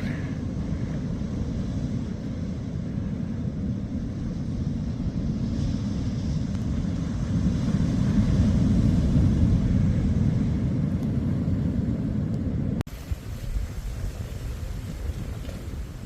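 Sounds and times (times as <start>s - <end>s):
waves breaking: 12.9s - 16.0s.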